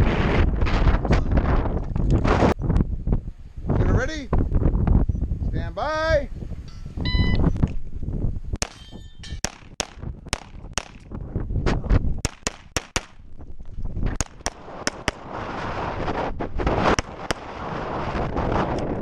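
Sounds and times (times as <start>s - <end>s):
wind buffeting microphone: 0.0s - 19.0s
pistol shots: 9.4s - 11.1s, 12.2s - 13.2s, 14.2s - 15.3s.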